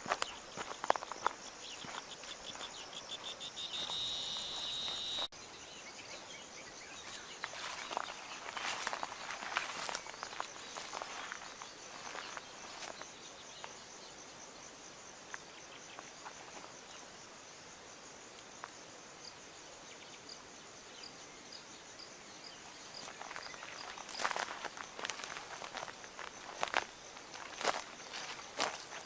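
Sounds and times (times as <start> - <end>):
footsteps in dry vegetation: 0.0 - 5.3, 7.0 - 13.1, 23.0 - 29.0
insects trilling: 0.0 - 29.0
faint high chirps: 1.7 - 6.2.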